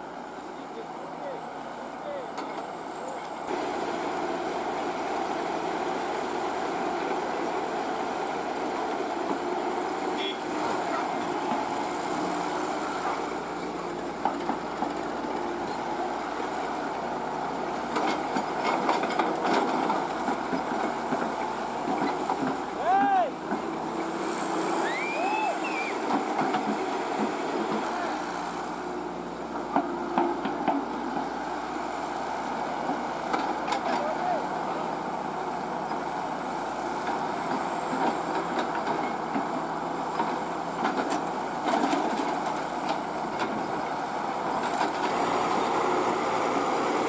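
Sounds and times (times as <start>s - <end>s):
excavator diesel engine running: 0.0s - 47.0s.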